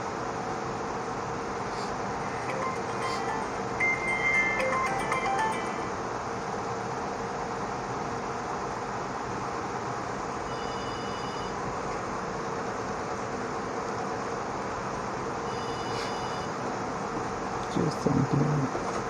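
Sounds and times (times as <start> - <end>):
faint high tones: 2.2 - 6.2.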